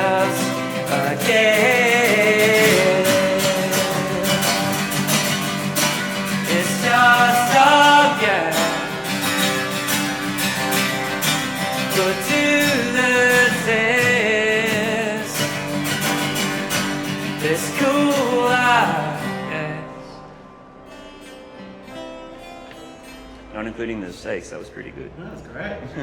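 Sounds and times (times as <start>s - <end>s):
man singing: 0.0s - 9.8s, 11.7s - 15.9s, 17.1s - 20.2s
acoustic guitar: 0.0s - 24.9s.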